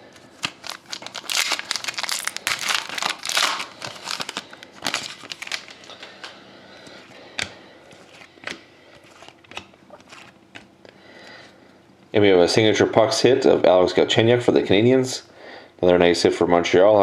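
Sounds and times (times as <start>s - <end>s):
packaging crinkling and tearing: 0.1s - 6.4s.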